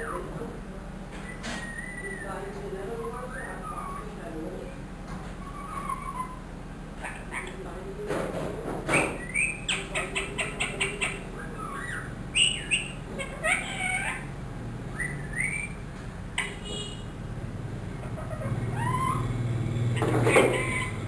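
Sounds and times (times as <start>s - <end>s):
parrot whistled calls: 1.2s - 2.3s, 9.0s - 14.3s, 14.9s - 15.8s, 18.1s - 19.3s.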